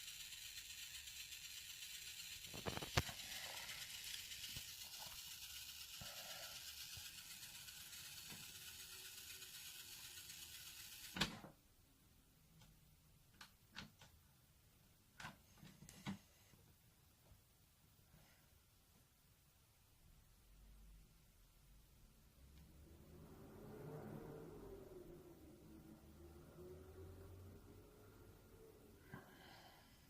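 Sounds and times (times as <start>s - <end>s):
high-pitched whine: 0.0s - 9.2s
laptop electrical hiss: 0.0s - 11.6s.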